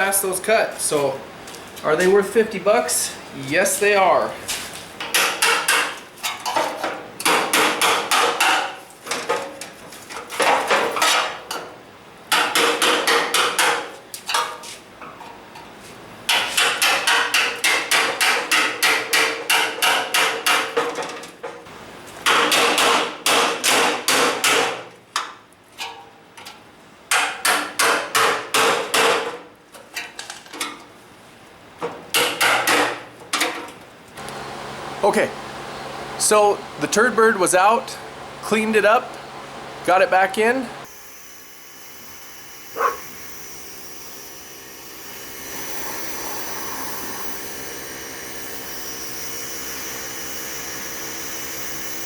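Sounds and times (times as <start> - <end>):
hammer striking sheet metal: 7.2 - 8.8, 16.3 - 20.8, 22.3 - 24.8.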